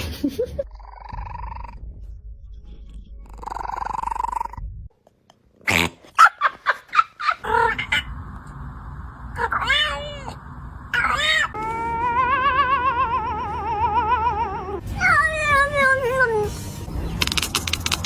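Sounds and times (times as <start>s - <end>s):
cat buzzy pulsing calls: 7.2s - 8.2s, 9.4s - 16.6s.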